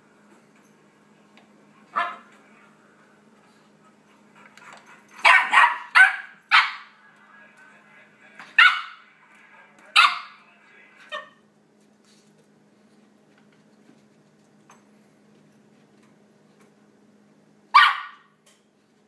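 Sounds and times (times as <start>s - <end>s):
puppy barking: 1.9s - 2.3s, 5.2s - 7.0s, 8.6s - 9.0s, 10.0s - 10.4s, 17.7s - 18.3s
dog barks from a computer: 2.0s - 2.3s, 5.3s - 6.9s, 8.6s - 9.0s, 10.0s - 10.4s, 17.8s - 18.3s.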